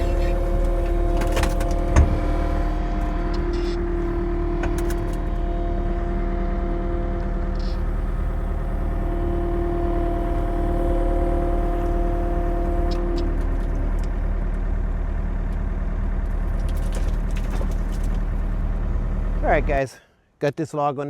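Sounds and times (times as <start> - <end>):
steady whine: 0.0 - 16.6
engine running steadily: 0.0 - 20.0.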